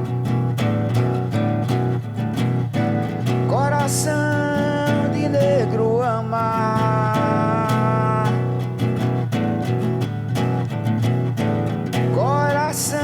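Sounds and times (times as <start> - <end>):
strummed acoustic guitar: 0.0 - 13.0
man singing: 3.2 - 8.7, 12.0 - 13.0.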